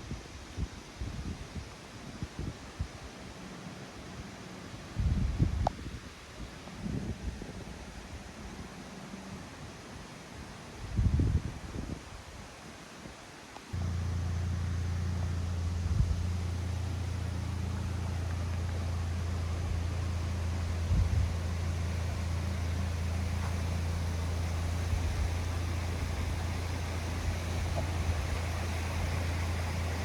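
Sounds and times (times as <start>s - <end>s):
noise haze: 13.6s - 30.0s
low engine-like hum: 13.8s - 30.0s.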